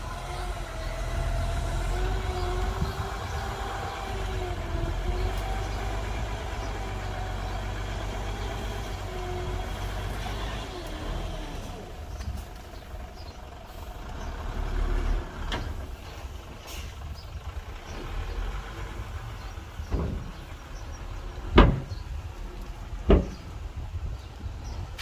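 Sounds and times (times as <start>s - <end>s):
heavy machinery engine rumble: 0.0s - 25.0s
sharp metallic knocks: 23.1s - 23.4s.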